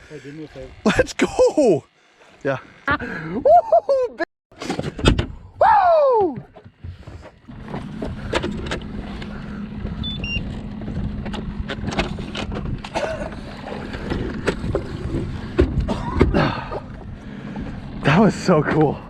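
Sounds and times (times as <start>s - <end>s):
steady low hum: 6.6s - 19.0s
knocks and clatter on deck: 14.0s - 16.4s.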